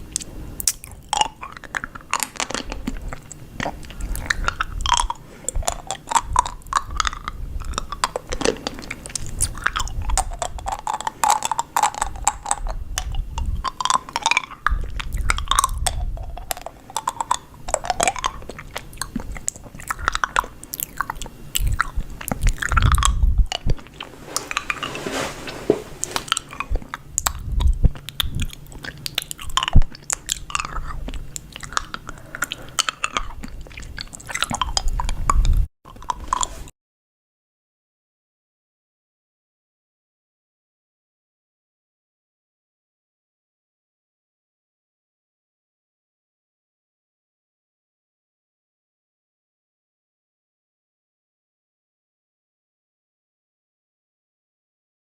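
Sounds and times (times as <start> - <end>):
person chewing crunchy food: 0.0 - 36.7.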